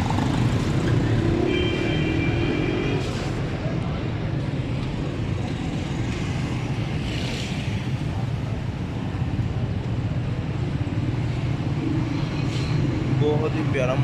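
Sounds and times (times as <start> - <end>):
street traffic rumble: 0.0 - 14.0
vehicle horn: 1.4 - 3.1.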